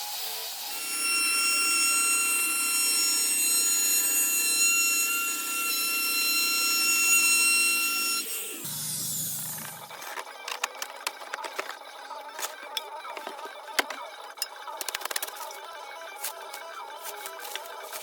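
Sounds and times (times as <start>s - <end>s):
power tool motor whine: 0.0s - 9.8s
tool cutting wood: 0.1s - 11.7s.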